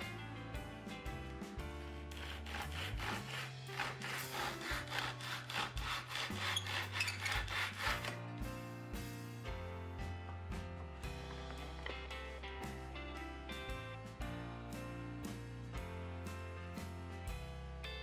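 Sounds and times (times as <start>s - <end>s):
background music: 0.0s - 18.0s
hand saw cutting wood: 2.1s - 8.2s.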